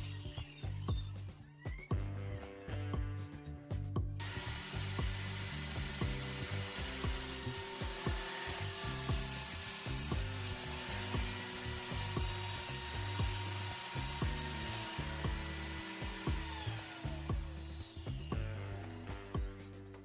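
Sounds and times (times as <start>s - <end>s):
background music with beat: 0.0s - 20.0s
tool cutting wood: 4.2s - 19.6s.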